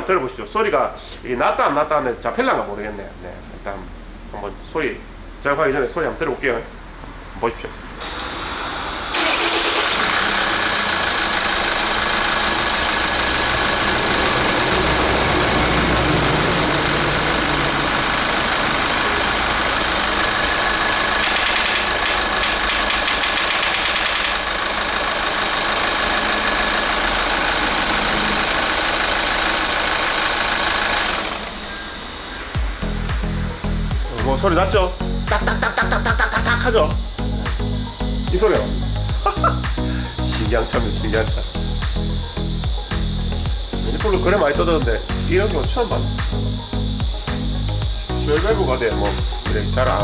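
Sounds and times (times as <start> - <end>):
diesel engine running: 8.4 - 50.0
rapid clacking of valve actuator: 16.9 - 27.6.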